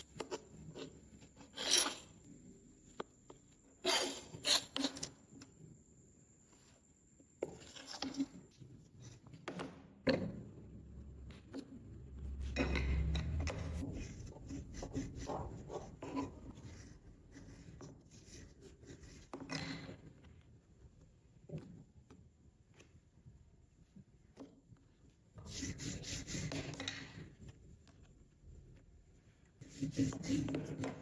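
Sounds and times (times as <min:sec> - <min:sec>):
scraping and rubbing: 0:00.0 - 0:02.2.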